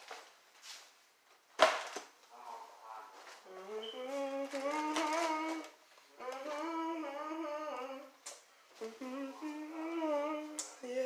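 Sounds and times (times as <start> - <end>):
person humming: 3.5 - 11.0.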